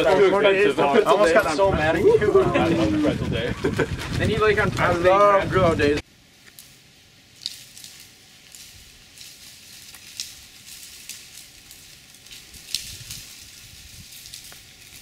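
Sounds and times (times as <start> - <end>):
food sizzling on a grill: 6.3 - 15.0.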